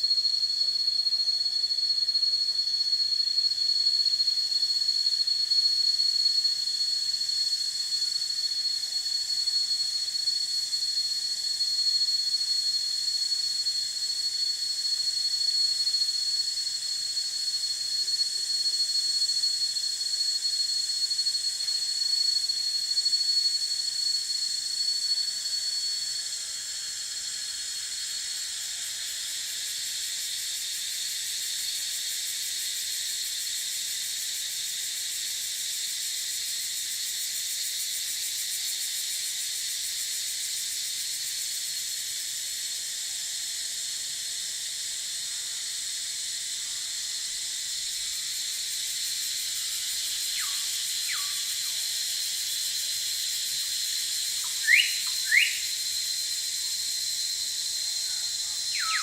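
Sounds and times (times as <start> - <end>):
insects chorus: 0.0 - 59.0
bird whistled calls: 50.2 - 51.8, 54.4 - 55.8, 58.7 - 59.0.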